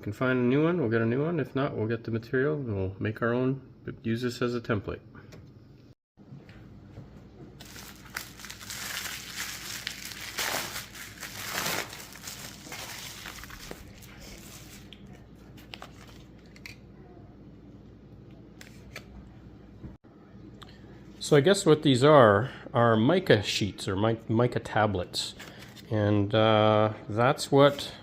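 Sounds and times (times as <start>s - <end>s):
packaging crinkling: 7.6s - 16.8s.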